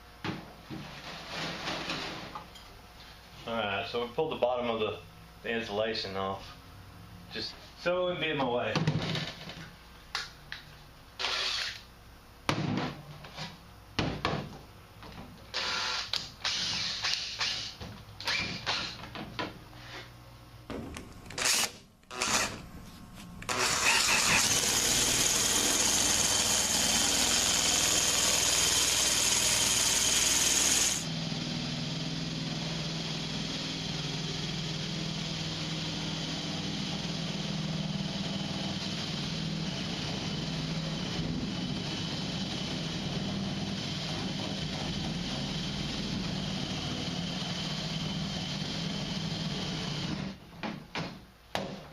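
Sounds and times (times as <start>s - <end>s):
power tool cutting sheet metal: 11.2s - 11.8s, 15.6s - 19.0s, 21.4s - 22.6s, 23.5s - 31.1s.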